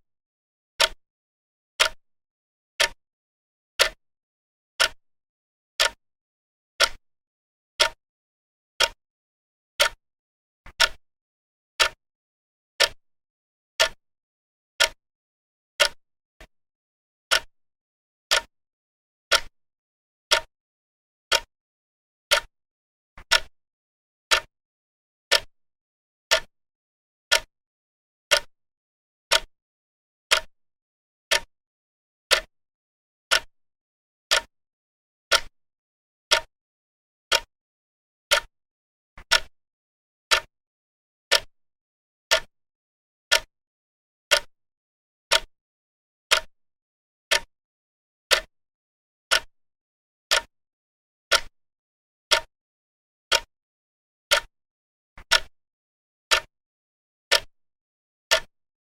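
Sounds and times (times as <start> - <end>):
clock ticking: 3.8 - 4.0, 5.8 - 6.0, 6.8 - 7.0, 8.8 - 9.0, 9.8 - 10.0, 10.7 - 11.0, 34.3 - 34.5, 35.3 - 35.5, 39.2 - 39.5, 48.3 - 48.5, 50.3 - 50.5, 51.3 - 51.5, 55.3 - 55.5.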